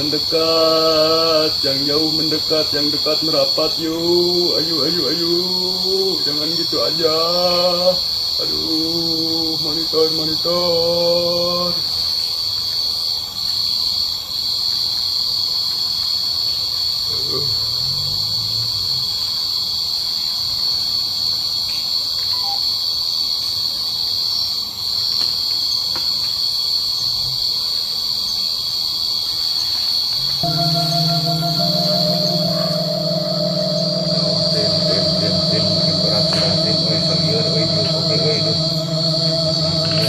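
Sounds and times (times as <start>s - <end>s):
cricket chorus shrilling: 0.0s - 23.4s, 28.2s - 40.0s.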